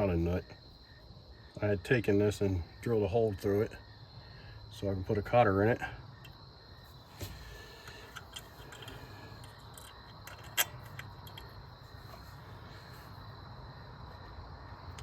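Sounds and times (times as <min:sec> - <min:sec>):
crickets chirping: 0:00.0 - 0:15.0
small parts clicking: 0:07.8 - 0:11.5.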